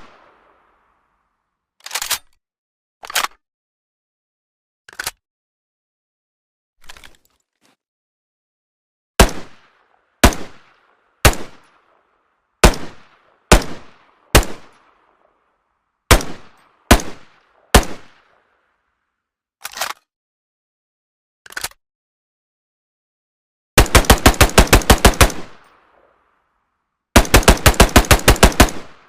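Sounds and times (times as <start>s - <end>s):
rifle gunshots with echo: 9.2s - 15.4s, 16.1s - 18.6s, 23.8s - 26.1s, 27.2s - 29.0s.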